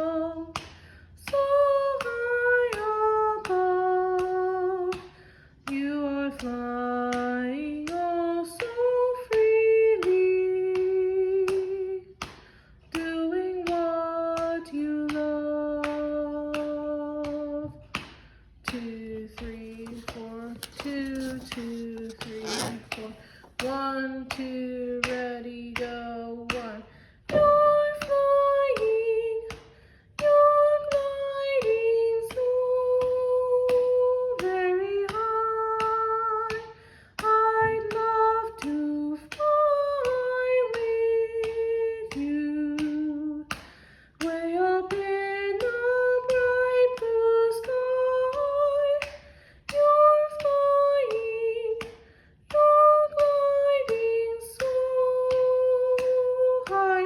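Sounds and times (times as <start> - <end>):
woman singing soprano: 0.0 - 12.3, 12.9 - 18.0, 18.6 - 29.6, 30.2 - 57.0
hands clapping a beat: 0.4 - 57.0
breaths between phrases: 5.1 - 5.6, 12.4 - 12.8, 26.8 - 27.2, 29.6 - 30.2, 36.7 - 37.2, 43.6 - 44.2, 49.2 - 49.7, 52.0 - 52.4.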